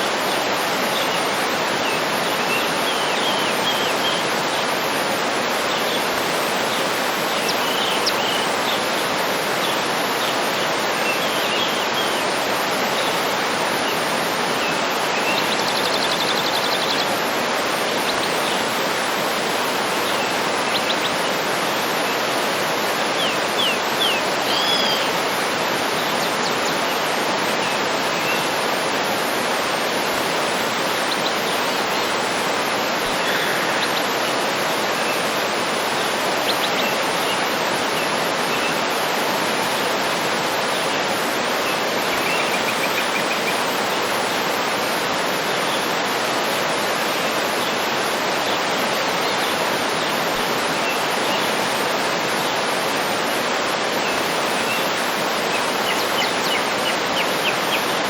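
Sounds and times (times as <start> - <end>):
waterfall rushing: 0.0 - 58.0
small birds chirping and trilling: 0.3 - 28.7, 47.6 - 58.0.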